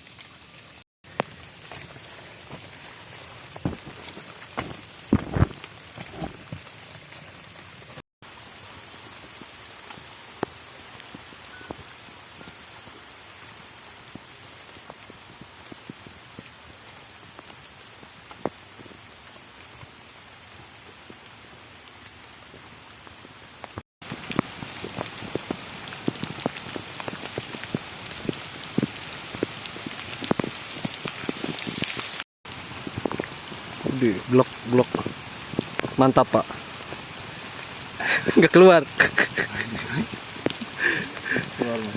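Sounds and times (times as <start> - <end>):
raindrops tapping close by: 0.0 - 41.9
steady rain falling: 0.0 - 41.9.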